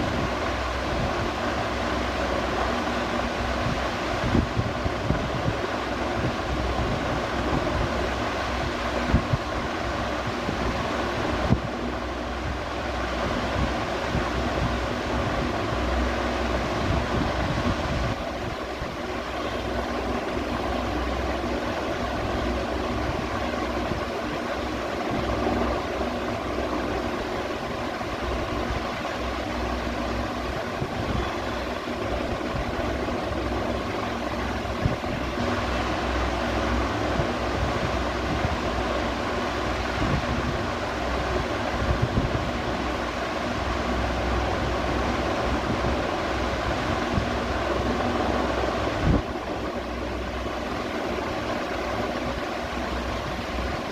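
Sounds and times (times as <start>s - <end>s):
air rumble on microphone: 0.0s - 53.9s
ceiling fan whirring hum: 0.0s - 53.9s.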